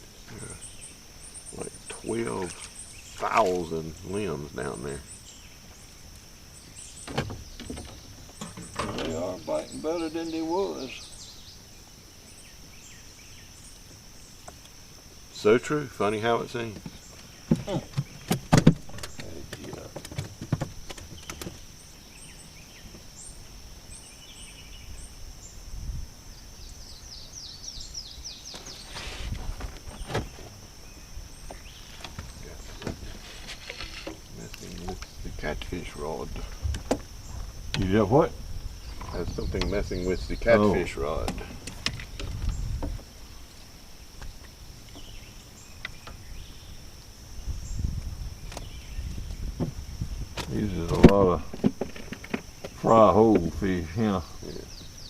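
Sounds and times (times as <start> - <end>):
bird calling: 0.0 - 14.8, 26.5 - 55.0.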